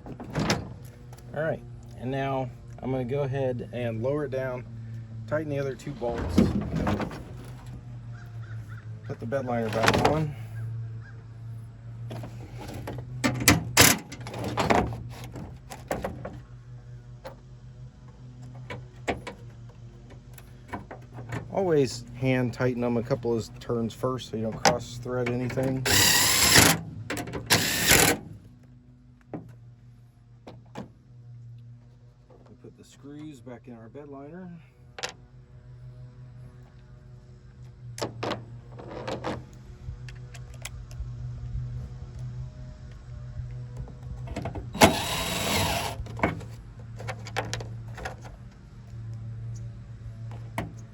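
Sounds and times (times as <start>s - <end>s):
power driver running screws: 25.6s - 28.4s, 44.6s - 46.6s.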